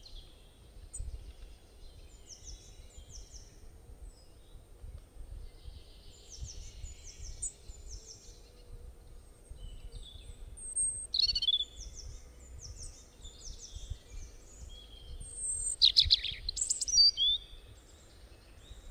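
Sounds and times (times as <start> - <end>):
wild birds chirping: 0.0 - 18.9.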